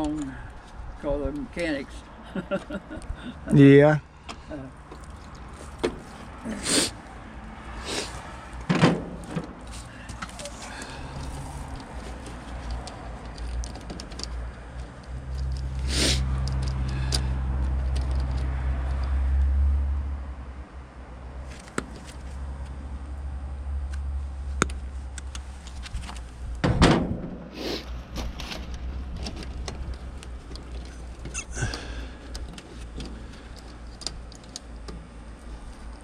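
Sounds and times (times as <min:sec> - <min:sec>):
loud knock: 0:26.6 - 0:27.5.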